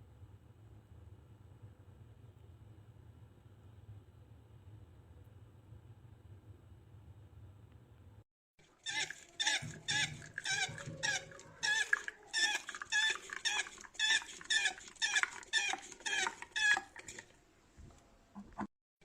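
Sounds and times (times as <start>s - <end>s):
hand pump squeaking: 8.7s - 17.3s.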